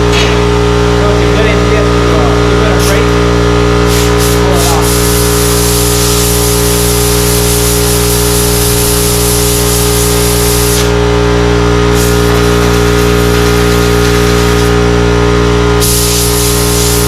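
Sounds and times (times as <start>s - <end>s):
motor drone: 0.0s - 17.0s
loud hiss: 3.8s - 11.0s, 15.8s - 17.0s.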